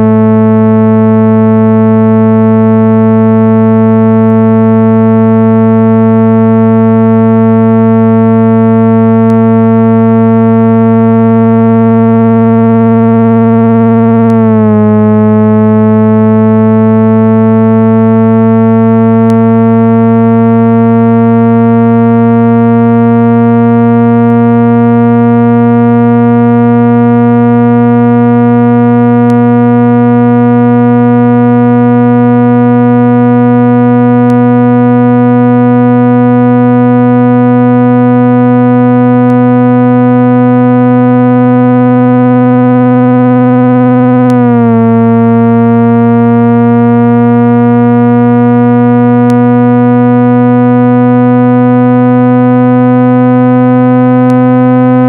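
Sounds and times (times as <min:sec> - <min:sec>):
synthesized drone tone: 0:00.0 - 0:55.0.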